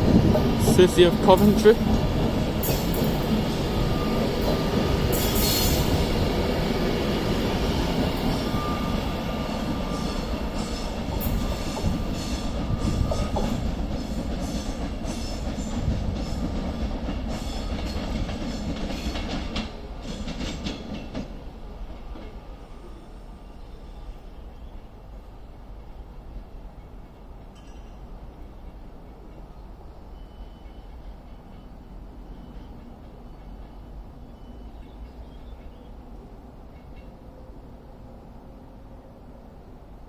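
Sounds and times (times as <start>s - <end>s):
wheels clicking over rail joints: 0.0s - 6.4s
train rumbling past: 0.0s - 40.0s.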